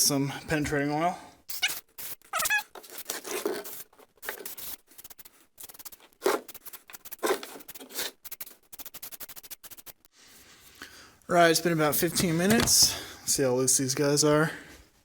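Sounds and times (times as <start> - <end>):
aerosol spray hissing: 3.7 - 9.9.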